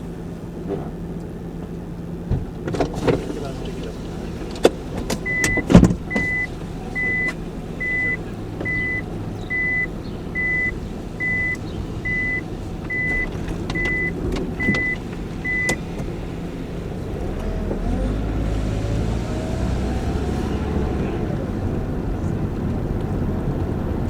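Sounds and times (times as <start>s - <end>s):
low hum of car: 0.0s - 24.0s
car warning beeper: 5.2s - 16.0s.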